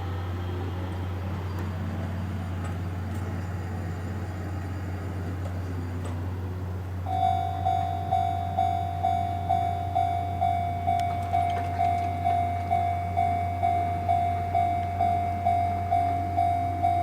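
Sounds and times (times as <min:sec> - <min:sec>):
level-crossing warning bell ringing: 0:07.0 - 0:17.0.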